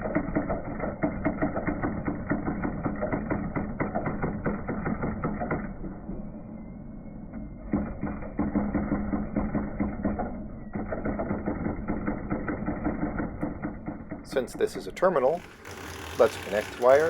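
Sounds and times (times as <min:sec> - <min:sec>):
low printer hum: 0:14.2 - 0:17.0
printer hammer clatter: 0:15.2 - 0:17.0.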